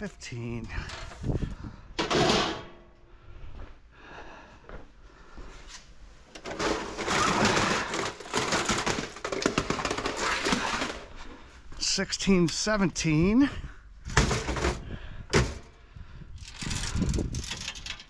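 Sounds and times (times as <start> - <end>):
metal cases clattering and scraping: 0.8 - 2.8, 6.3 - 11.2, 14.1 - 15.8, 16.4 - 18.0
loud clunk: 2.0 - 2.9.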